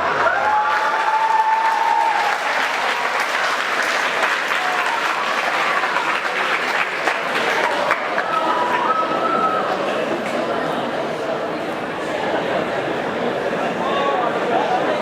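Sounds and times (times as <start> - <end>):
audience clapping: 0.0 - 10.6
people cheering: 0.0 - 10.6.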